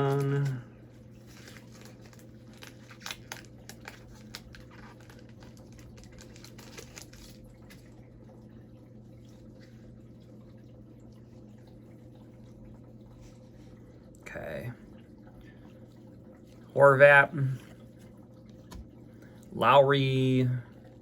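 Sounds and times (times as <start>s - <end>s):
low electrical hum: 0.0s - 21.0s
wrapper crinkling: 1.2s - 8.0s.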